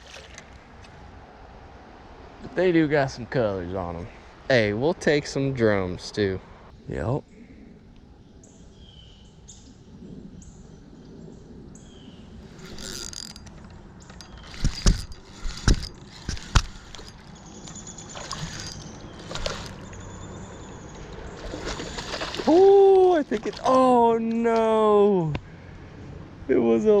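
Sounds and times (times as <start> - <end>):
sharp clicks and knocks: 12.5 - 19.8.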